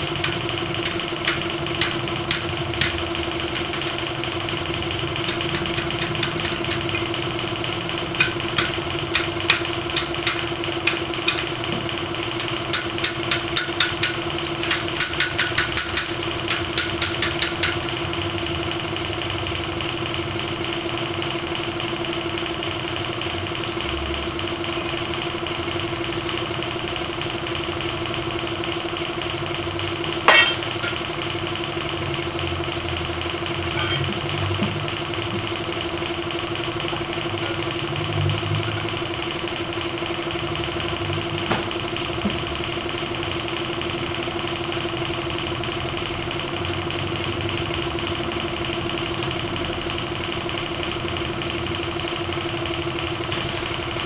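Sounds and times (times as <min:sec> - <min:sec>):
engine hum: 0:29.1 - 0:43.2.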